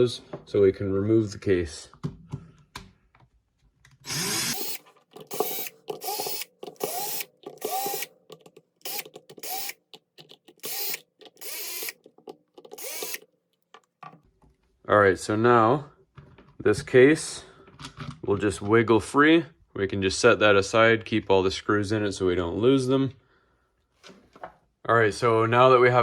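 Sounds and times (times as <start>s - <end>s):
power driver motor whining: 4.1s - 8.1s, 8.8s - 9.8s, 10.5s - 12.0s, 12.6s - 13.2s.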